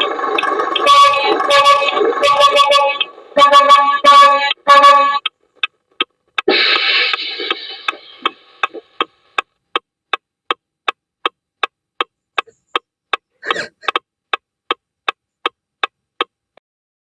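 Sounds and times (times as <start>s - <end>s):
sharp ticking clicks: 0.0s - 3.2s, 4.5s - 16.4s
loud crash: 6.5s - 8.2s
short rush of noise: 6.5s - 9.0s.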